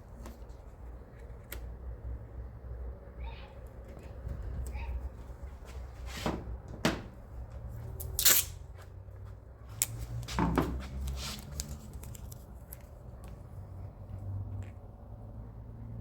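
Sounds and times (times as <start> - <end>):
taps and rustles: 9.8 - 12.2.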